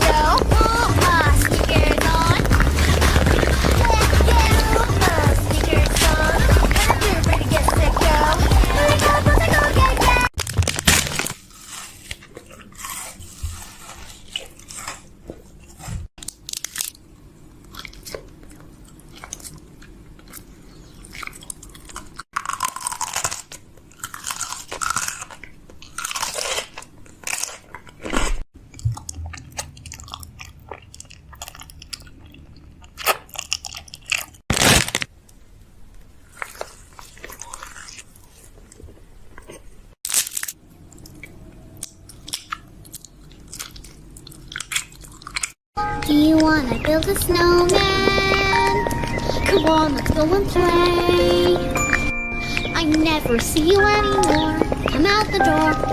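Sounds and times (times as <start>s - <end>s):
person chewing crunchy food: 0.0s - 35.1s, 36.0s - 55.9s.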